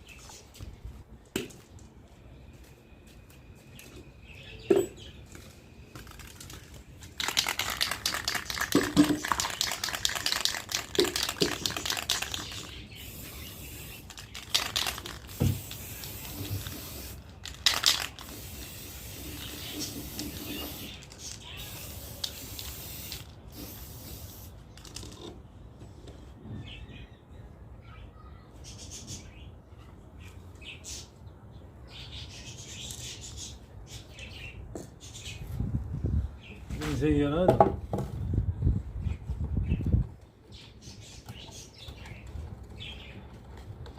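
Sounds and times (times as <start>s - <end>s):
spray can rattling: 6.0s - 25.2s
spray can hissing: 7.2s - 24.6s
small birds chirping: 7.7s - 17.3s, 18.2s - 24.9s, 26.4s - 35.7s, 39.0s - 43.4s.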